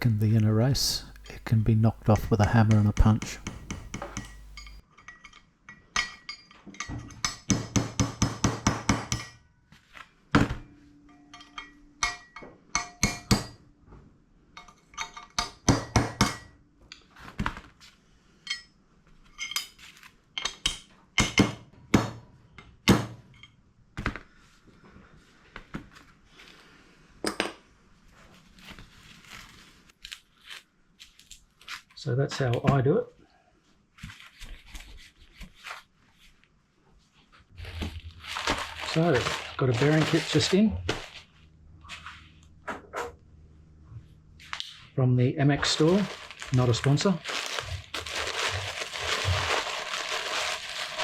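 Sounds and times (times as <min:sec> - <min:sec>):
hammer striking metal punch: 0:02.7 - 0:04.8.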